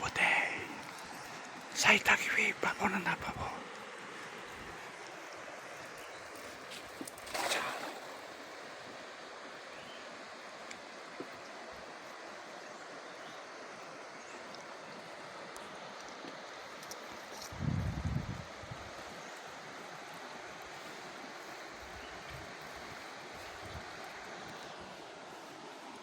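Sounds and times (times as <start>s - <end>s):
river water rushing: 0.0s - 17.2s
water splash: 7.0s - 8.4s.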